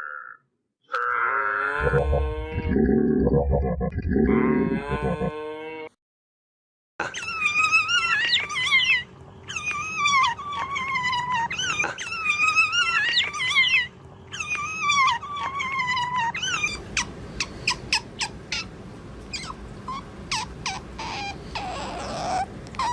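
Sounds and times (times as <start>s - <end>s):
animal whining: 1.3s - 5.4s, 7.1s - 22.9s
short squeaks and clicks: 20.3s - 22.9s.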